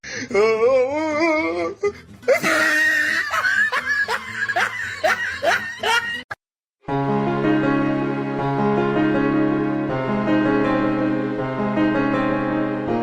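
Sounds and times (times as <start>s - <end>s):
laugh-like cries: 1.0s - 6.3s.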